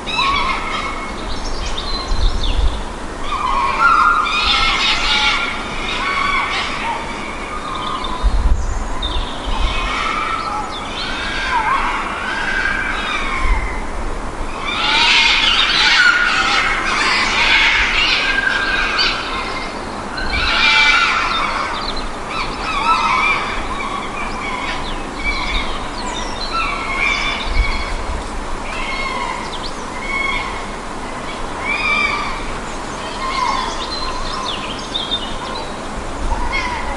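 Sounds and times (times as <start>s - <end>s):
shrill animal cries: 3.3s - 7.1s, 14.6s - 19.6s, 20.2s - 25.6s.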